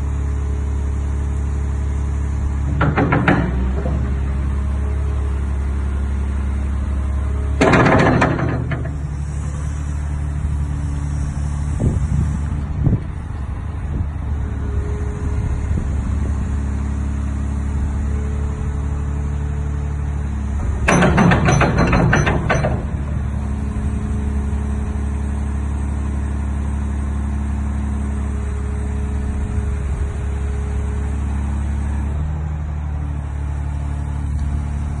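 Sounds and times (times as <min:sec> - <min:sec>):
excavator diesel engine running: 0:00.0 - 0:35.0
noisy clatter bursts: 0:02.0 - 0:06.2, 0:07.3 - 0:13.0, 0:20.4 - 0:28.0.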